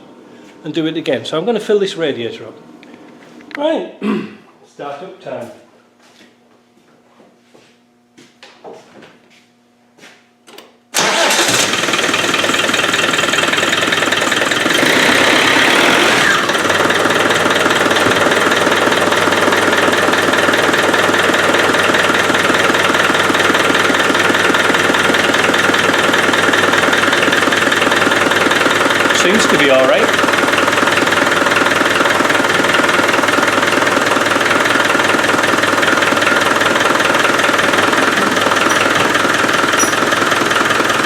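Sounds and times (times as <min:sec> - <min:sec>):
diesel engine starting and idling: 0:10.9 - 0:41.0.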